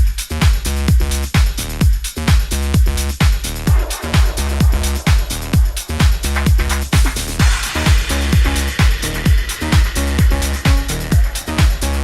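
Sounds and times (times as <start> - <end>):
steady kick drum: 0.0 - 12.0
electronic dance music: 3.1 - 12.0.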